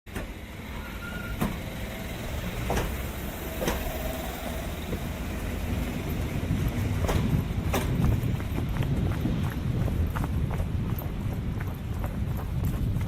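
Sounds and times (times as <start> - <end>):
low rumble: 1.6 - 13.0
sharp knocks: 2.6 - 4.0, 7.0 - 8.2.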